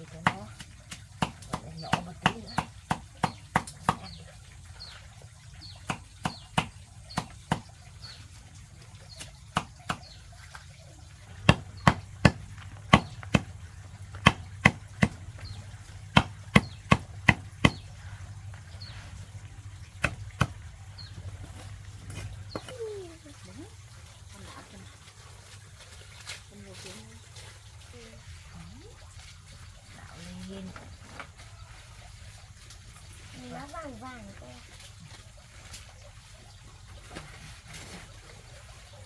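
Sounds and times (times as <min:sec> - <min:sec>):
knife chopping plant stem: 0:00.2 - 0:04.2, 0:05.8 - 0:07.7, 0:09.2 - 0:10.2, 0:11.4 - 0:13.6, 0:14.2 - 0:17.9, 0:20.0 - 0:20.6.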